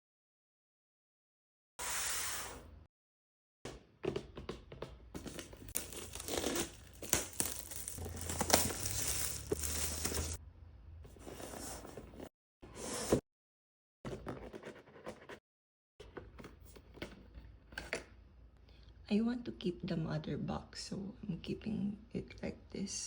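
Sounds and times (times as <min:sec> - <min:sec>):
packaging tearing and crinkling: 0:05.7 - 0:10.4.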